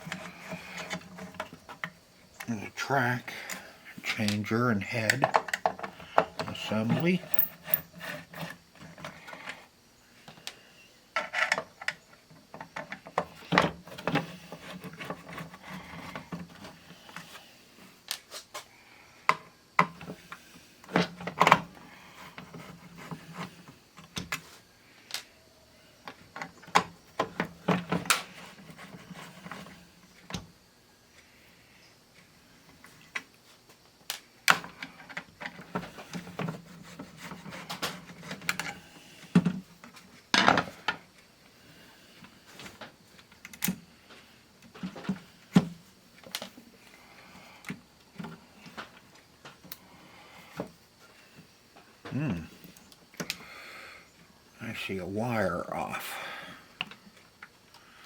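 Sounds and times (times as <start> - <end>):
hand tools clicking and tapping: 5.1 - 7.9.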